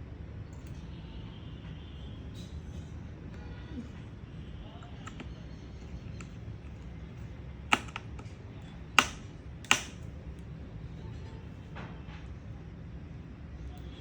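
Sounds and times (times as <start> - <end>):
low steady hum: 0.0 - 14.0
small hardware clicking on laptop: 4.8 - 6.8, 7.7 - 8.3.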